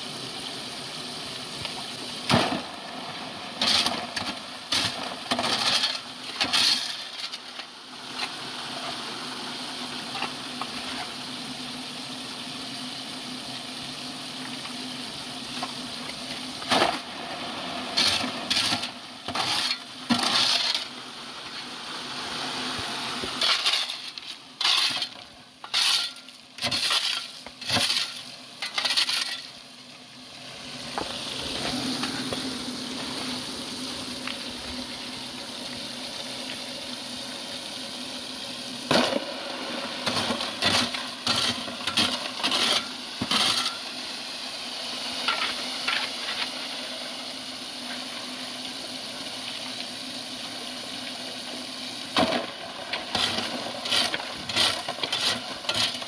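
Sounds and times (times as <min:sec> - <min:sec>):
steady rushing hiss: 0:00.0 - 0:56.0.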